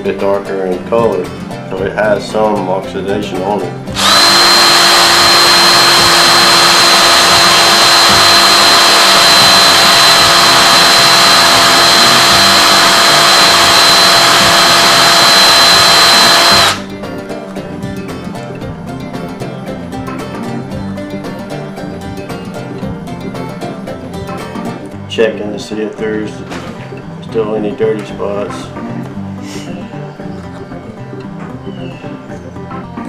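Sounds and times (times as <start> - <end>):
background music: 0.0 - 33.0
wire wheel power tool whine: 3.9 - 16.9.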